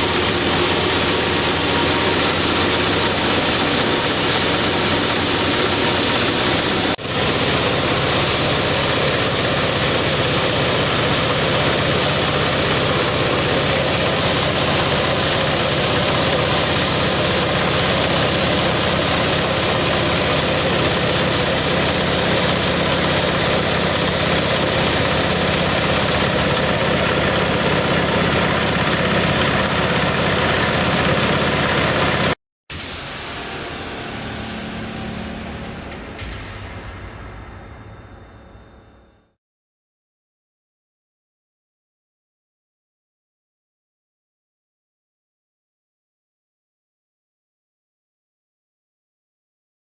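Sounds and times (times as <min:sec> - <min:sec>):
coffee huller machine running: 0:00.0 - 0:36.7.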